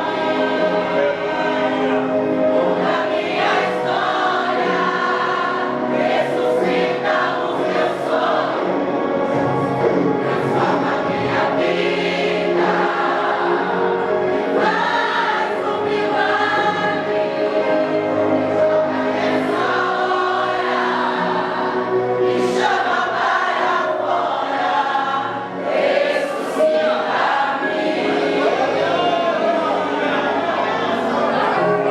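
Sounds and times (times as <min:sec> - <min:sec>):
choir singing gospel: 0:00.0 - 0:31.9.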